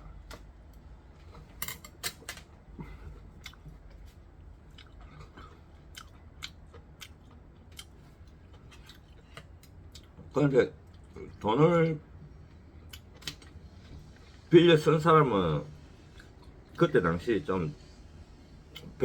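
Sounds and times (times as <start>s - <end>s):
person chewing: 2.8s - 10.2s.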